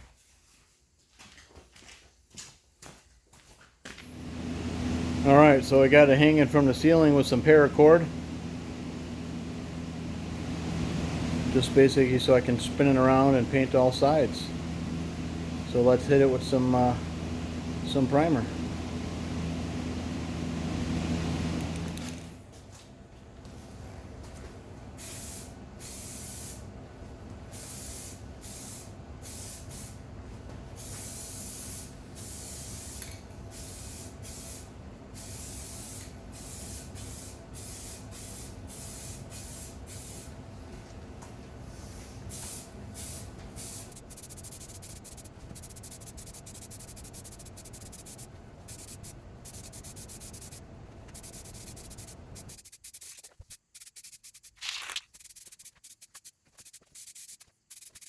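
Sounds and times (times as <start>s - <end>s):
aerosol can hissing in bursts: 42.3s - 50.6s, 51.2s - 58.0s.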